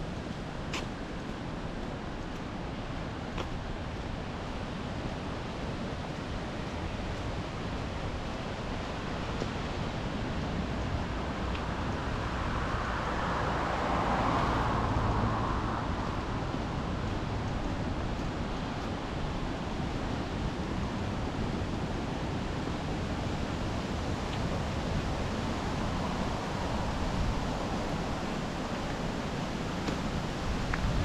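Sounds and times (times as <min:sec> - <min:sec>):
surf washing on shore: 0:00.0 - 0:31.0
wind on microphone: 0:23.7 - 0:31.0.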